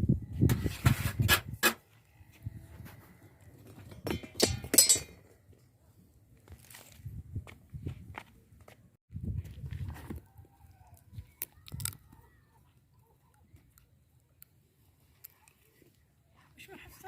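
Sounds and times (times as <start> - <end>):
sharp clinks and knocks: 3.9 - 5.3.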